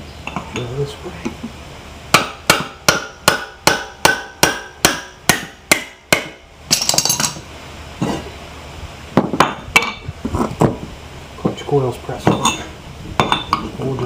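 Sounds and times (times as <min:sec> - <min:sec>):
hammer striking metal: 0:02.2 - 0:07.4.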